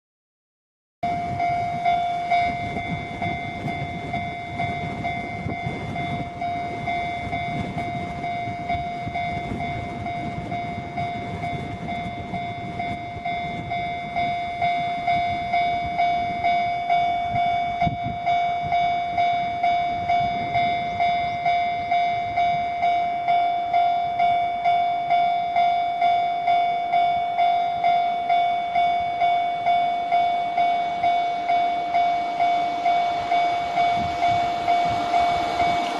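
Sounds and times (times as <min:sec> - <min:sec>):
freight train rumble: 0:01.0 - 0:35.9
level-crossing warning bell: 0:01.0 - 0:35.9.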